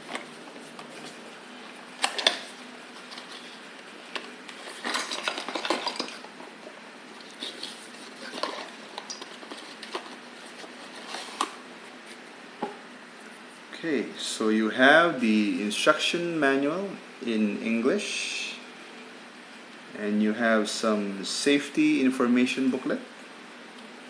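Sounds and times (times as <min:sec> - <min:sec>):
paper rustling: 0:00.0 - 0:12.3.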